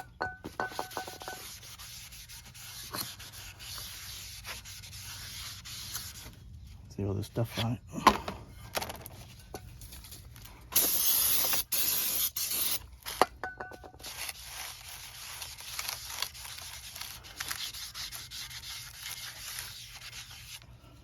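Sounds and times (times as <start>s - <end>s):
scrubbing and wiping: 0.7s - 6.4s, 14.0s - 20.6s
aerosol spray hissing: 10.8s - 12.8s.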